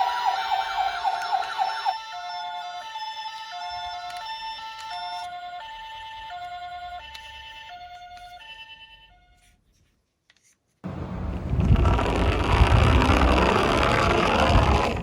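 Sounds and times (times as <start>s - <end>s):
toy siren two-tone: 0.0s - 9.5s
loud noise: 10.9s - 15.0s.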